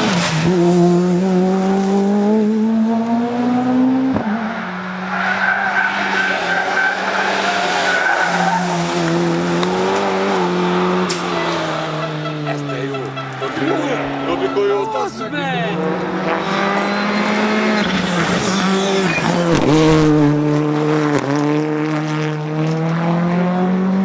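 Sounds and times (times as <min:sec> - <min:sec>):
rally car engine revving: 0:00.0 - 0:24.0
tyres squealing: 0:04.2 - 0:20.3.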